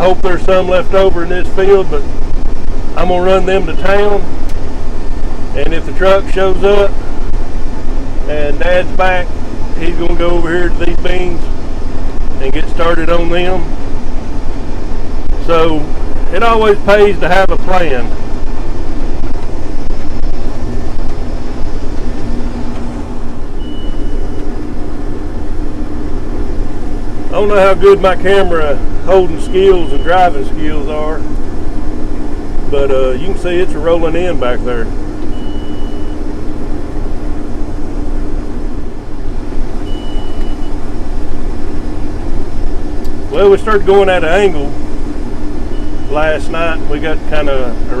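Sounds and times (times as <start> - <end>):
combine harvester drone from cab: 0.0 - 48.0
short high beep: 23.5 - 24.5, 29.4 - 30.2, 35.3 - 36.2, 39.8 - 40.8, 45.7 - 46.2.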